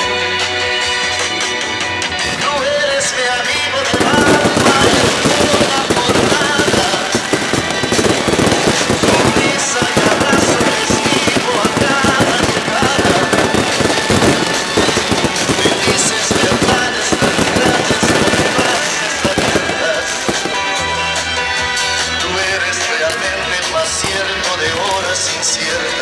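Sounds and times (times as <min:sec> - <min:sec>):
fireworks crackling: 0:00.0 - 0:26.0
music: 0:00.0 - 0:26.0.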